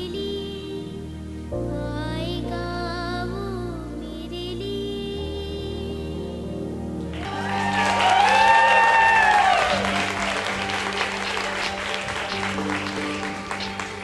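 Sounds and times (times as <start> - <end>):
background music: 0.0 - 14.0
audience applause: 7.1 - 14.0
loud cheer: 7.1 - 14.0.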